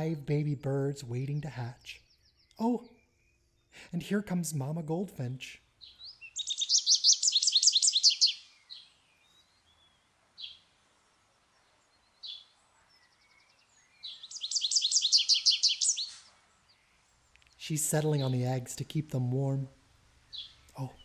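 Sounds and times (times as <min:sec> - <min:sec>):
small songbird trilling and chirping: 0:05.7 - 0:18.5, 0:20.3 - 0:21.0.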